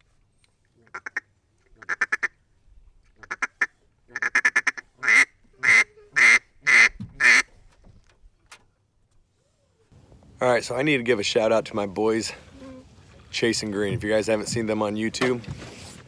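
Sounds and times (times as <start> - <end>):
duck quacking: 1.8 - 2.4, 3.2 - 7.5.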